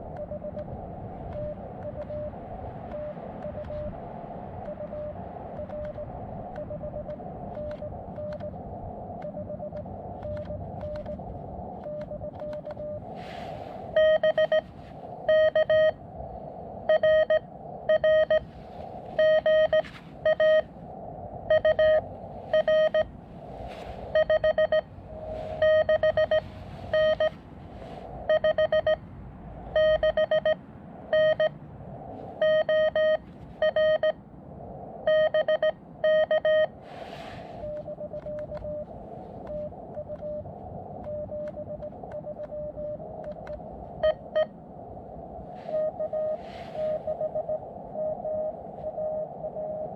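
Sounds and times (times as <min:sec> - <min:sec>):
morse code beeps: 0:01.4 - 0:02.3, 0:04.7 - 0:08.6, 0:09.2 - 0:11.2, 0:11.8 - 0:13.0, 0:13.9 - 0:16.0, 0:16.9 - 0:18.5, 0:19.2 - 0:20.7, 0:21.5 - 0:23.1, 0:24.1 - 0:27.4, 0:28.3 - 0:29.0, 0:29.8 - 0:31.6, 0:32.4 - 0:34.2, 0:35.1 - 0:36.7, 0:37.6 - 0:38.9, 0:39.5 - 0:44.5, 0:45.7 - 0:49.9
radio receiver hiss: 0:45.4 - 0:47.4.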